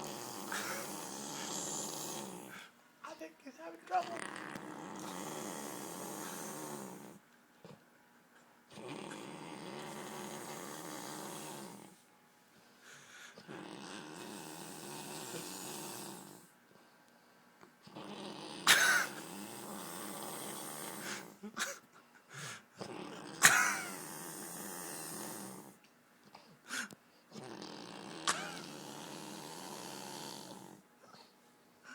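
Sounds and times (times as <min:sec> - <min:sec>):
man snoring: 0:00.0 - 0:02.6, 0:03.9 - 0:07.2, 0:08.8 - 0:12.0, 0:13.4 - 0:16.5, 0:17.9 - 0:21.4, 0:22.8 - 0:25.7, 0:27.4 - 0:30.8
loud snorts: 0:00.0 - 0:02.7, 0:03.9 - 0:07.8, 0:08.7 - 0:12.0, 0:12.9 - 0:16.5, 0:17.8 - 0:21.4, 0:22.4 - 0:25.8, 0:26.7 - 0:30.8.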